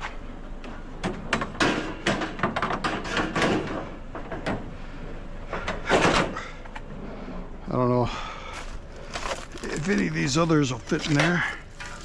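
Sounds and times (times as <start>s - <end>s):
scrap metal clattering: 8.5s - 12.0s.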